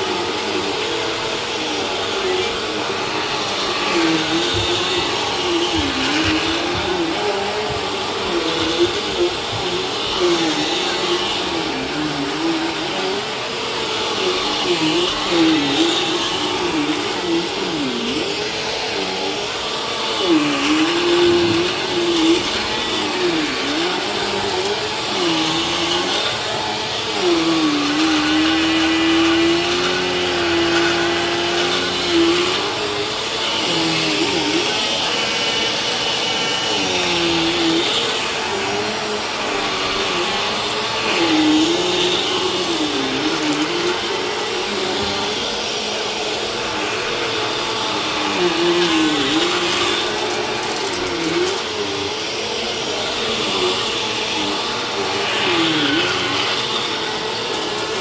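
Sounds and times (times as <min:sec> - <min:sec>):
vacuum cleaner running: 0:00.0 - 0:58.0.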